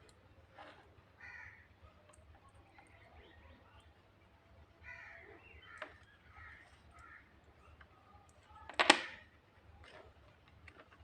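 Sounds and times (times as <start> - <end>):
faint bird calls: 1.2 - 2.0, 4.8 - 7.8.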